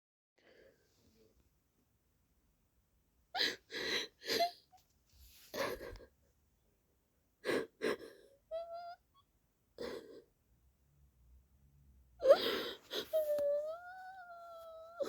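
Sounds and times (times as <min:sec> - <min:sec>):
person crying with gasping sobs: 0:03.4 - 0:04.7, 0:05.5 - 0:06.2, 0:07.4 - 0:09.2, 0:09.8 - 0:10.3, 0:12.2 - 0:15.0
high-pitched whimper: 0:12.2 - 0:15.0.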